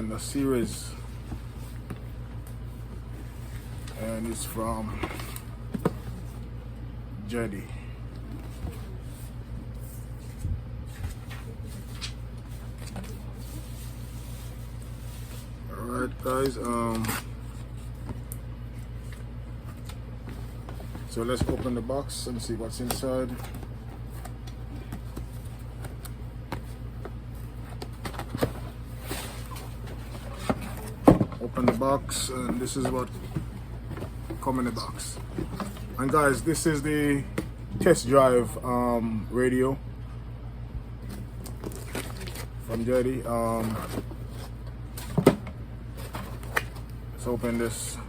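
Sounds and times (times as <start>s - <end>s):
steady low hum: 0.0s - 48.0s
cardboard box rustling: 32.4s - 36.6s.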